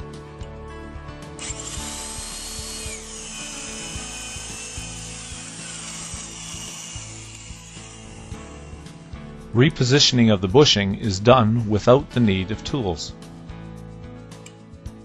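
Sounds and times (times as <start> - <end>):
background music: 0.0 - 15.0
power drill boring into wood: 1.4 - 9.1.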